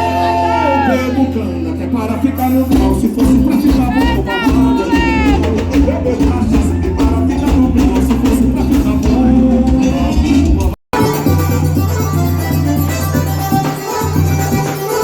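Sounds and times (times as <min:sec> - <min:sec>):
person singing or calling out: 0:00.0 - 0:01.4, 0:03.8 - 0:05.6
live band music: 0:00.0 - 0:15.0.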